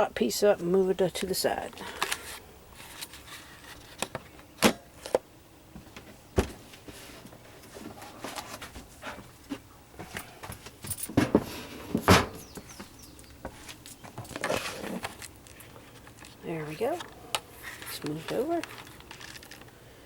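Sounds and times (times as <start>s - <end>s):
scraping and rustling: 1.7s - 4.4s, 6.0s - 19.8s
wooden knocks and clunks: 11.0s - 14.3s.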